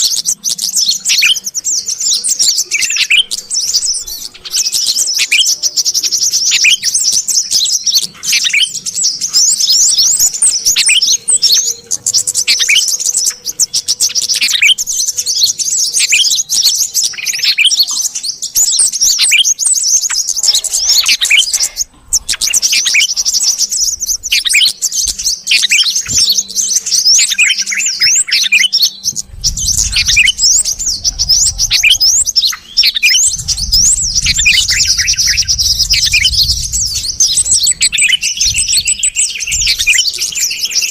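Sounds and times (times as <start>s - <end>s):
bulbuls chirping and chattering: 0.0s - 40.9s
low rumble: 29.1s - 40.3s.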